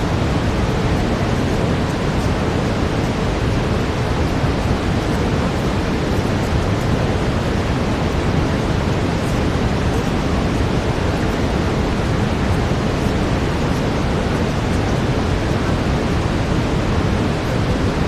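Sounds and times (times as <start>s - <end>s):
brown noise hiss: 0.0s - 18.0s.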